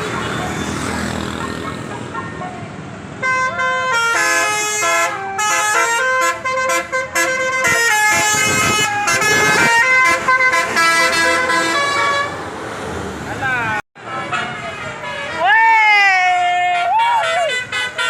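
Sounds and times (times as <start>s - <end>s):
multi-tone air horn melody: 3.2s - 12.4s, 16.7s - 18.0s.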